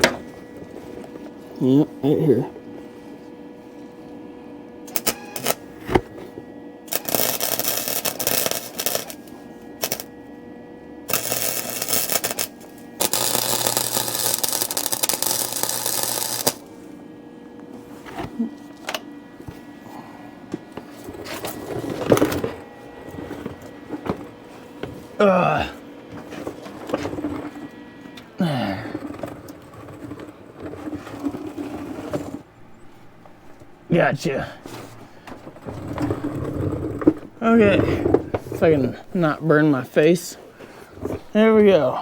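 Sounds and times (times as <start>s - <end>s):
welding arc noise: 4.8s - 17.0s, 32.9s - 40.4s.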